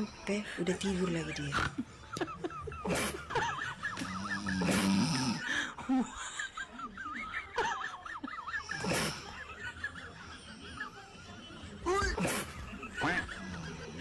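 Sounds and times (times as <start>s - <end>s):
man snoring: 4.0s - 5.5s.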